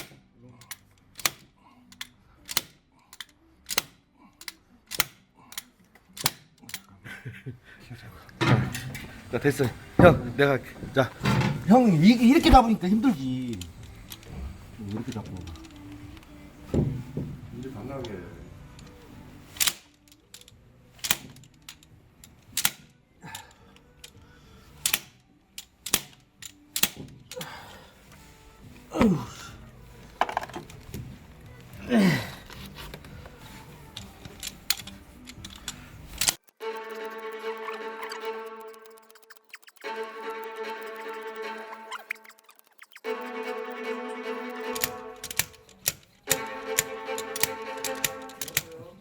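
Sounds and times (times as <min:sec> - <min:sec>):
ratchet wrench clicking: 0:00.0 - 0:06.8, 0:18.8 - 0:24.2, 0:24.8 - 0:27.5, 0:33.9 - 0:40.0, 0:44.7 - 0:48.8.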